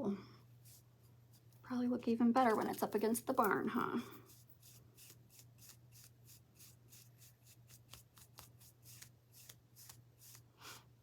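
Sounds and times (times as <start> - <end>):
paintbrush brushing on wood: 0.6 - 1.6, 4.2 - 10.6.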